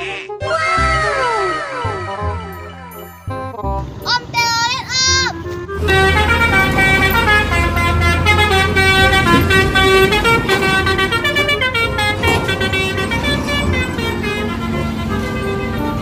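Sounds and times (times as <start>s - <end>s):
multi-tone bus horn tune: 0.0s - 16.0s.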